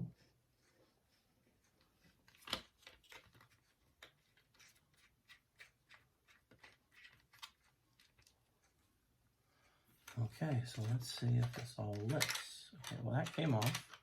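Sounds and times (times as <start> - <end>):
plastic toy parts clicking: 10.0 - 14.0.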